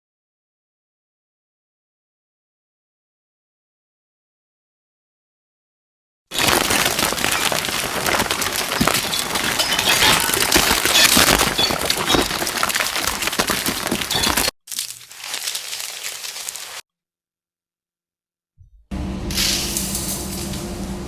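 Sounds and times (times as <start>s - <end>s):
dense cracks and clicks: 6.3s - 16.8s.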